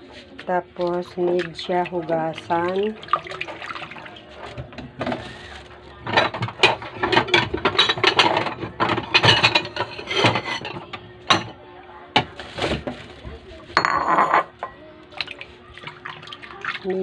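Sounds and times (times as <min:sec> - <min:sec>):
leaves clicking and rubbing: 0:05.2 - 0:05.9.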